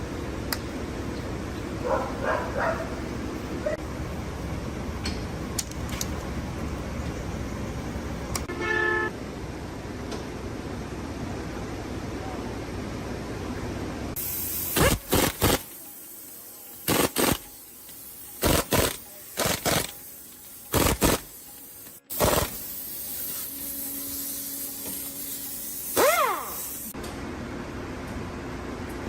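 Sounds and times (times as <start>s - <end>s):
short bursts of hiss: 14.2s - 27.0s.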